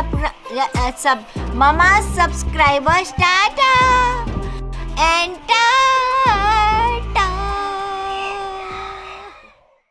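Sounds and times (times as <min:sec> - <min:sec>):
sung melody: 0:00.0 - 0:07.8
low bass tone: 0:01.4 - 0:03.2, 0:03.8 - 0:05.3, 0:06.3 - 0:07.6.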